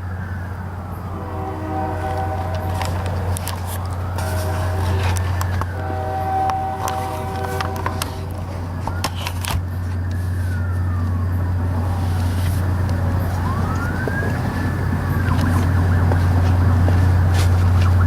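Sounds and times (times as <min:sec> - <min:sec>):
loud low drone: 0:00.0 - 0:09.0, 0:09.6 - 0:18.0
faint sliding tone: 0:00.8 - 0:13.0.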